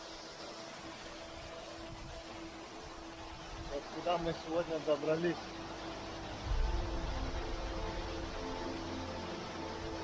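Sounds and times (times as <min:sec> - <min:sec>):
waterfall rushing: 0:00.0 - 0:10.0
wind rumble on microphone: 0:06.4 - 0:08.4.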